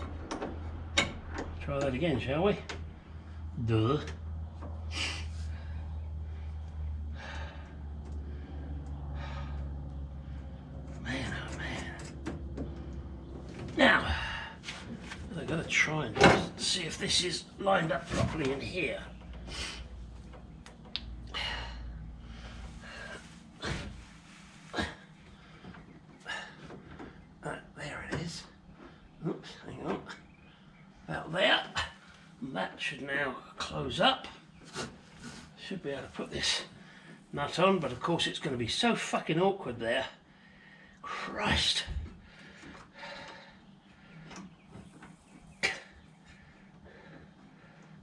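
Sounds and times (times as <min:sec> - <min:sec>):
steady low hum: 0:00.0 - 0:48.0
man breathing hard: 0:04.9 - 0:10.8, 0:14.0 - 0:15.0, 0:19.4 - 0:20.1, 0:21.2 - 0:27.3, 0:40.2 - 0:41.3, 0:42.0 - 0:44.4, 0:45.7 - 0:48.0.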